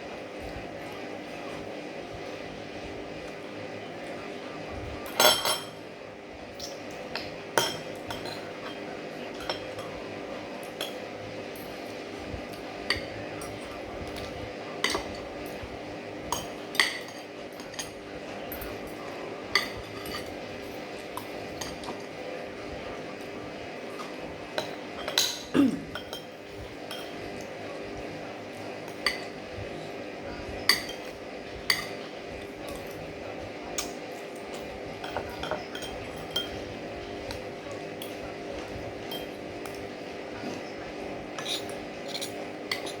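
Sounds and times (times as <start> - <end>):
cutlery clinking on a plate: 5.0 - 5.8, 6.5 - 10.0, 12.5 - 15.3, 16.3 - 22.2, 24.0 - 27.6, 28.9 - 29.4, 30.6 - 33.0, 33.8 - 37.4, 38.0 - 40.7, 41.3 - 43.0.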